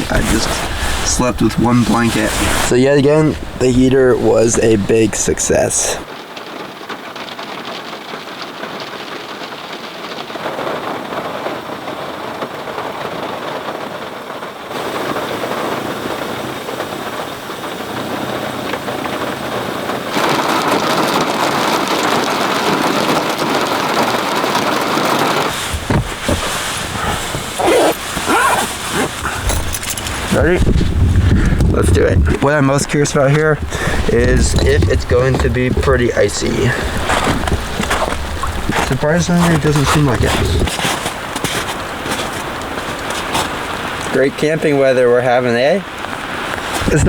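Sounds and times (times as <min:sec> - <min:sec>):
heavy rain falling: 0:00.0 - 0:47.0
low thumps: 0:25.5 - 0:40.8.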